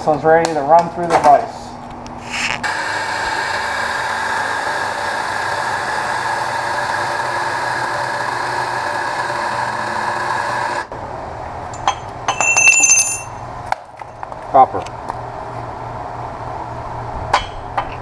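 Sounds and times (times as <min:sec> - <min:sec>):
angle grinder cutting steel: 0:02.2 - 0:10.9.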